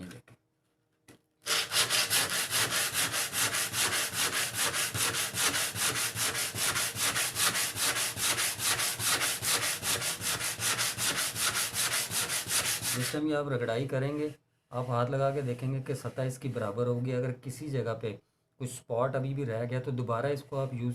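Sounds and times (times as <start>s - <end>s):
sandpaper rubbing on wood: 1.5s - 13.2s.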